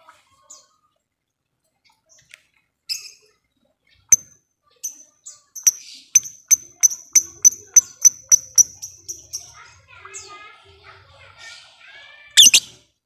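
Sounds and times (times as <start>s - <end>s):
lovebird chirping: 4.9s - 9.6s, 12.4s - 12.7s.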